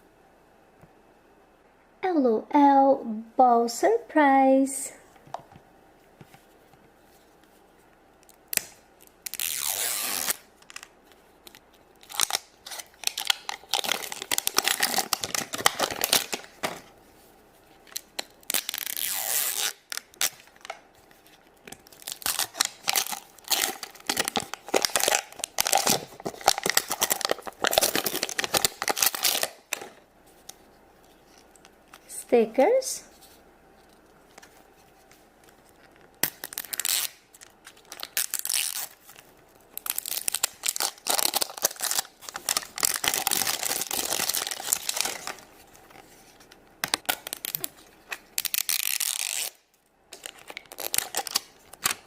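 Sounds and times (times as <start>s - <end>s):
crinkly wrapping being ripped: 8.2s - 16.8s, 17.8s - 30.6s, 35.4s - 46.1s, 46.8s - 52.0s.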